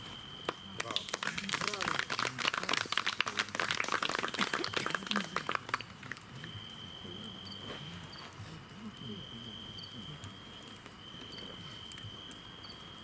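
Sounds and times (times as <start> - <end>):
audience clapping: 0.5 - 6.3.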